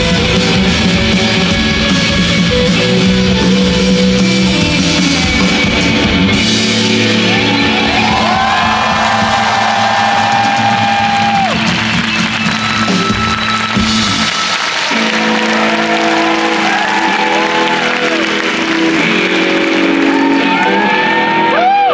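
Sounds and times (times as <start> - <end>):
live band playing: 0.0 - 21.9.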